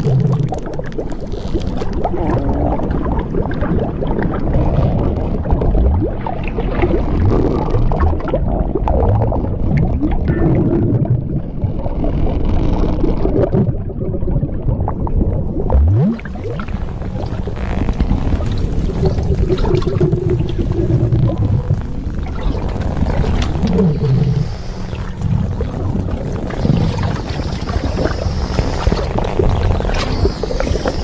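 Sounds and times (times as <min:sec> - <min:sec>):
stretching creaking swelling: 0:00.0 - 0:03.0, 0:15.7 - 0:31.0
gurgling liquid: 0:00.0 - 0:31.0.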